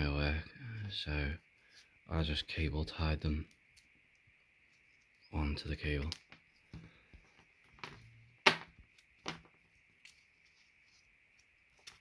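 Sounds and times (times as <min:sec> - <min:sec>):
faint high hum: 0:00.0 - 0:08.4
cables clicking and knocking: 0:05.9 - 0:09.6.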